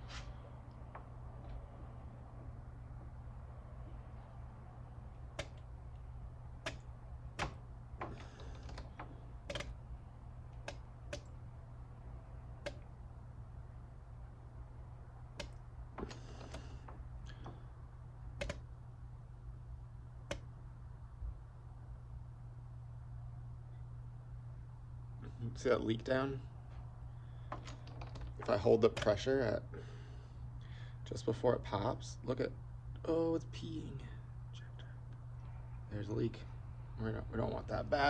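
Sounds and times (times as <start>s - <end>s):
steady low hum: 0.0s - 38.0s
tools clicking and tapping: 6.6s - 9.8s, 18.4s - 18.6s.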